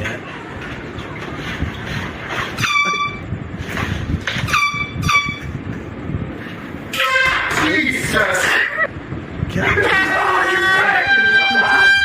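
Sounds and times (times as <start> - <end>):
air horn blasts: 2.6 - 3.4, 4.3 - 5.6, 6.9 - 7.6, 10.4 - 12.0.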